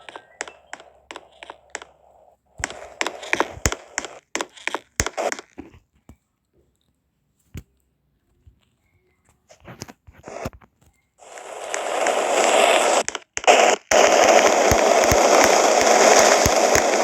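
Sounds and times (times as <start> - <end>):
sharp clicks: 0.0 - 2.0, 2.6 - 5.7, 11.2 - 17.0
dense crackling noise: 0.0 - 5.8, 9.6 - 17.0.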